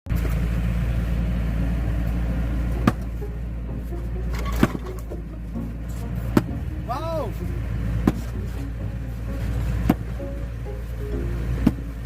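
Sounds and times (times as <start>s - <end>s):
steady low hum: 0.1s - 12.0s
axe striking a log: 2.8s - 3.1s, 4.4s - 5.1s, 6.3s - 6.6s, 8.0s - 8.3s, 9.8s - 10.1s, 11.6s - 11.9s.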